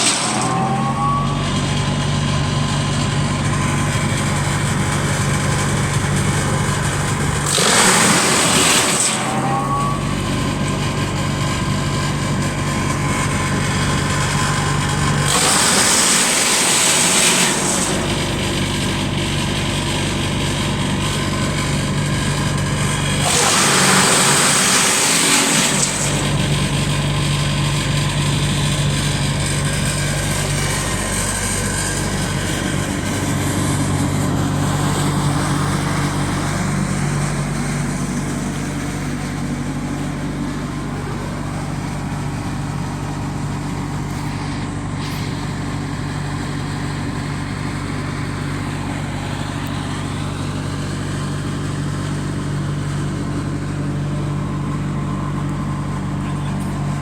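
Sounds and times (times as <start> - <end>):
wood chipper engine running: 0.0 - 57.0
rough hissing noise: 44.0 - 47.4.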